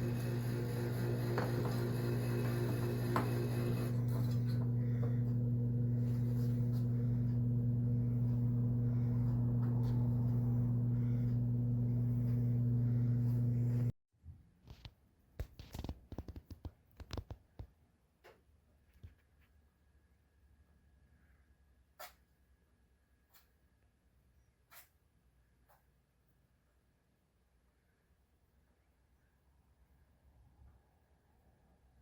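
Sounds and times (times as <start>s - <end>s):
electrical motor hum: 0.0s - 14.0s.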